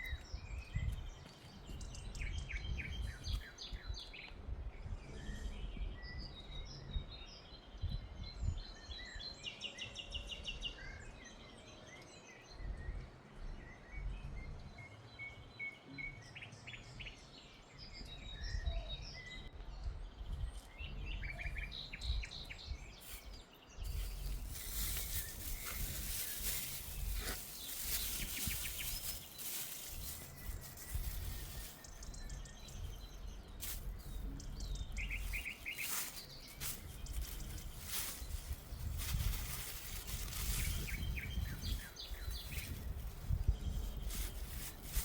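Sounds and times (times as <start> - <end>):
wind rumble on microphone: 0.0 - 15.2, 16.2 - 45.0
small birds chirping: 0.0 - 45.0
broad rustling hiss: 23.0 - 32.2, 33.6 - 34.3, 35.0 - 45.0.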